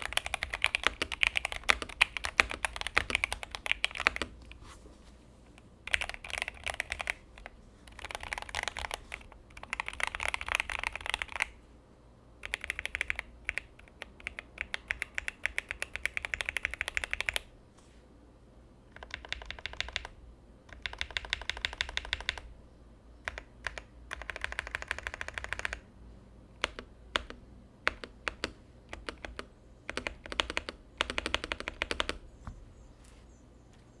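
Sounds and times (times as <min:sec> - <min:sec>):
mechanical keyboard typing: 0:00.0 - 0:04.4, 0:05.9 - 0:11.5, 0:12.4 - 0:17.5, 0:18.9 - 0:22.5, 0:23.2 - 0:25.8, 0:26.6 - 0:32.2.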